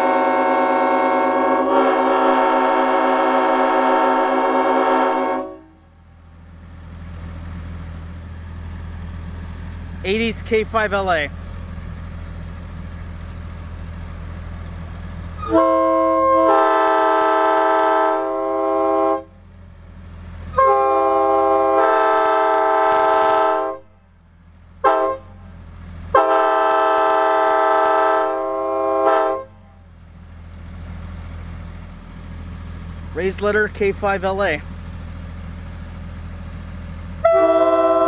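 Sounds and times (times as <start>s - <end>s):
locomotive air horn blasts: 0.0s - 6.0s, 15.4s - 19.4s, 20.5s - 24.0s, 24.8s - 25.4s, 26.1s - 29.8s, 37.2s - 38.0s.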